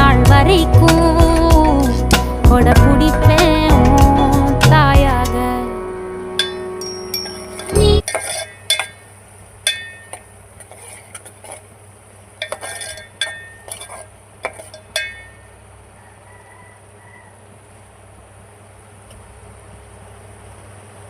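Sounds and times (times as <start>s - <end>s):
steady low hum: 4.9s - 16.2s
metal utensils clinking on dishes: 6.4s - 9.1s, 9.7s - 11.7s, 12.4s - 15.5s.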